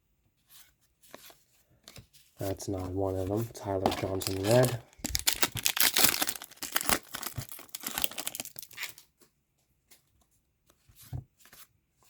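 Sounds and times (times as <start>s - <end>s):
wrapper crinkling and tearing: 3.8s - 9.1s.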